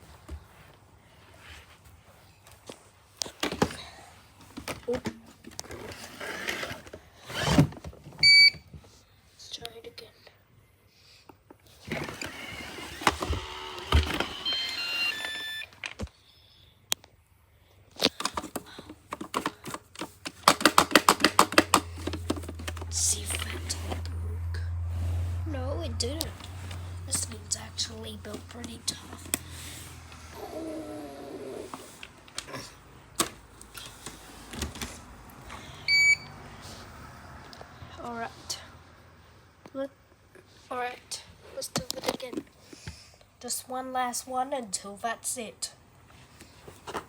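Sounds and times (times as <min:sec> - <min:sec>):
robot vacuum motors running: 0:05.8 - 0:07.7, 0:11.8 - 0:15.7
stepped electronic beeps: 0:14.4 - 0:15.7
rattle of clicks and knocks: 0:18.3 - 0:24.0.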